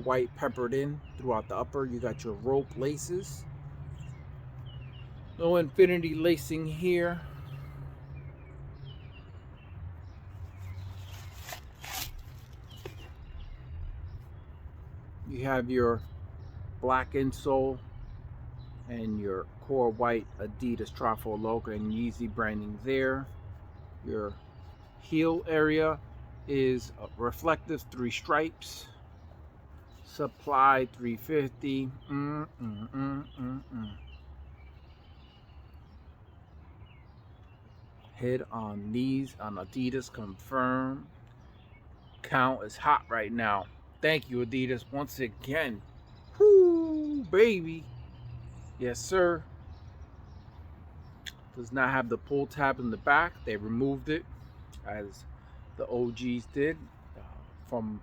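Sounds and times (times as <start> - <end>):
man talking: 0.0 - 3.4, 5.4 - 7.3, 15.3 - 16.1, 16.8 - 17.8, 18.9 - 23.3, 24.0 - 24.4, 25.0 - 29.0, 30.1 - 34.0, 38.2 - 41.1, 42.2 - 45.8, 46.4 - 47.9, 48.8 - 49.5, 51.6 - 55.2, 55.8 - 58.0
shoe rustling: 10.2 - 13.4
faint bird chirps: 28.8 - 38.3.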